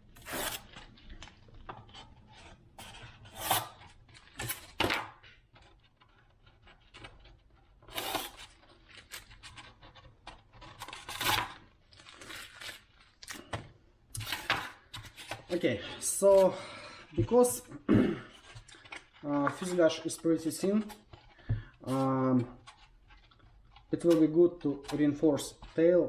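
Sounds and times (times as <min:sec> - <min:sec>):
hands scraping and rustling model: 0:00.0 - 0:26.0.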